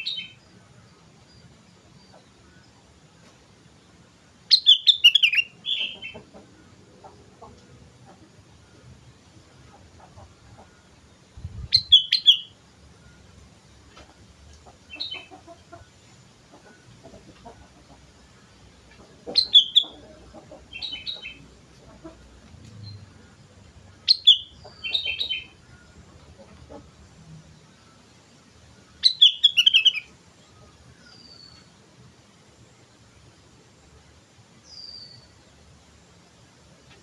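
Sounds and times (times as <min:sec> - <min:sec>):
bird singing whistled phrases: 0:11.8 - 0:12.5.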